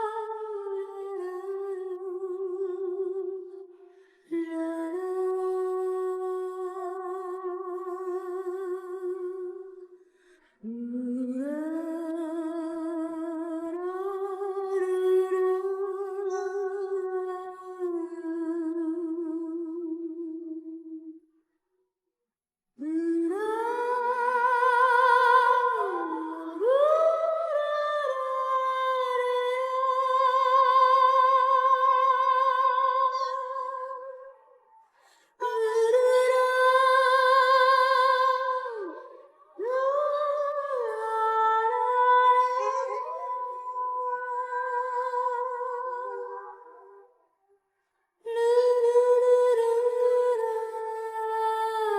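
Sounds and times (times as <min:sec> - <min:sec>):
woman singing a cappella: 0:00.0 - 0:10.0, 0:10.6 - 0:21.2, 0:22.8 - 0:47.2, 0:48.2 - 0:51.9
woman breathing: 0:34.8 - 0:35.4.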